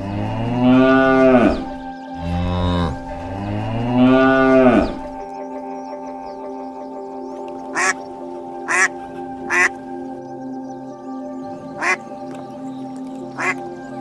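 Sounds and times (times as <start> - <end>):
cow mooing: 0.0 - 5.0
background music: 0.0 - 14.0.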